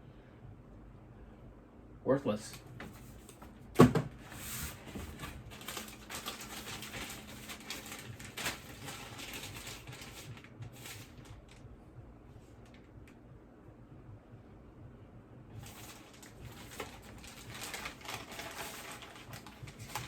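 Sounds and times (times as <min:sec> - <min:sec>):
packaging crinkling: 0:04.2 - 0:11.6, 0:15.6 - 0:20.0.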